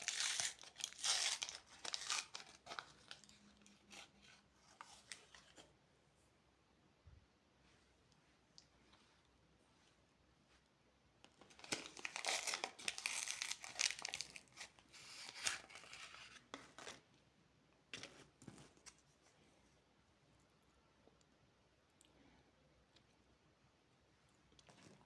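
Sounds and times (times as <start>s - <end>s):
candy wrapper crinkling and tearing: 0.0s - 4.1s, 11.4s - 17.0s.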